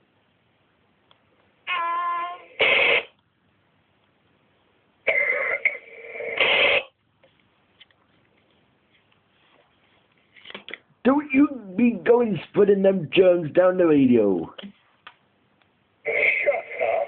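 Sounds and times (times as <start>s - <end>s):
radio noise burst: 2.4s - 3.2s, 5.1s - 7.0s, 16.0s - 17.0s
person coughing over radio: 16.1s - 17.0s
steady radio tone: 16.1s - 17.0s.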